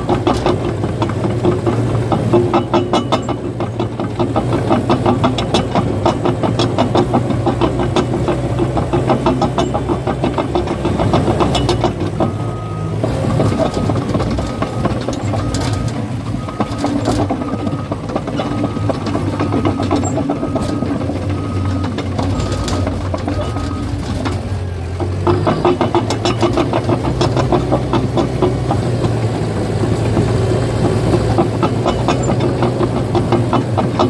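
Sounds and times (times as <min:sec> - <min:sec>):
diesel engine under load: 0:00.0 - 0:34.0
steel tracks clattering: 0:00.0 - 0:34.0
backup alarm beeping: 0:12.2 - 0:24.1.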